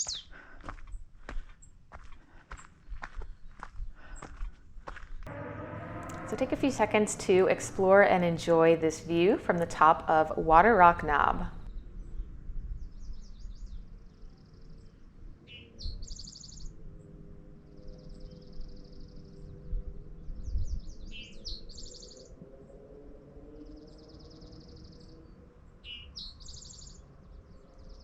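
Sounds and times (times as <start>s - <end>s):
songbird singing trill: 0.0s - 0.3s, 20.3s - 22.3s
wind rumble on microphone: 2.8s - 25.6s.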